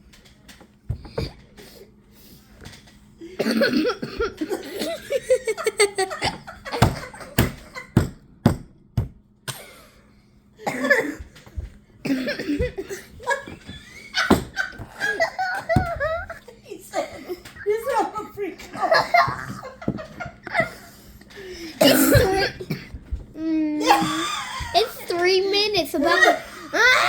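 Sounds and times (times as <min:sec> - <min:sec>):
person coughing: 0:03.3 - 0:05.2, 0:09.5 - 0:10.0, 0:10.6 - 0:11.3, 0:12.0 - 0:13.2, 0:21.6 - 0:23.0
voices and laughter: 0:12.6 - 0:22.8, 0:23.8 - 0:27.0.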